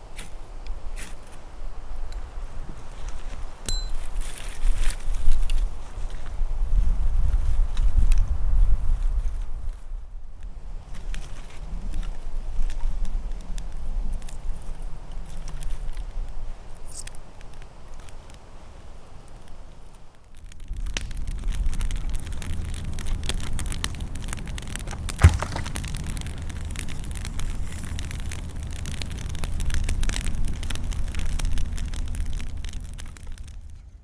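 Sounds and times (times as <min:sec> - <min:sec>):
fire crackling and popping: 0:10.4 - 0:34.0.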